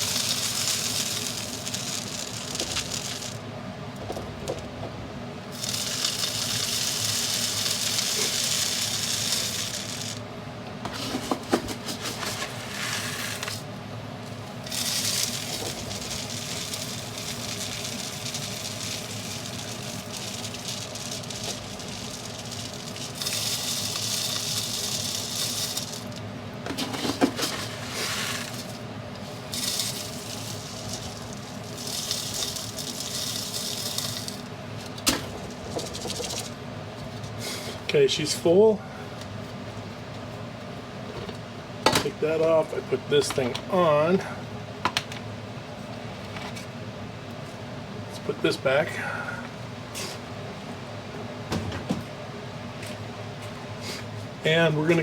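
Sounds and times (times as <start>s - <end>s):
seed pouring into plastic bottle: 0.0s - 3.4s, 5.5s - 10.2s, 12.2s - 13.7s, 14.6s - 26.2s, 27.4s - 28.8s, 29.4s - 34.5s, 35.4s - 36.5s.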